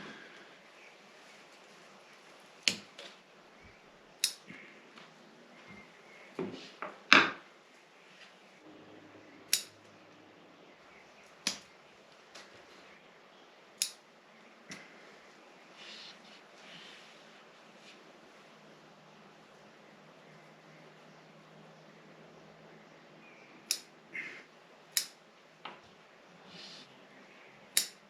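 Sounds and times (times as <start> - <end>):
cutters snipping: 4.2 - 4.5, 9.4 - 9.9, 11.4 - 11.7, 13.8 - 14.0, 23.7 - 23.9, 25.0 - 25.2, 27.7 - 28.0.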